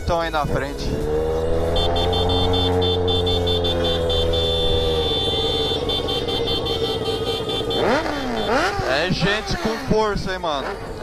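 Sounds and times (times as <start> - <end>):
vehicle engines running: 0.0 - 11.0
higher horn tooting: 1.5 - 10.0
long held horn blast: 1.6 - 9.0.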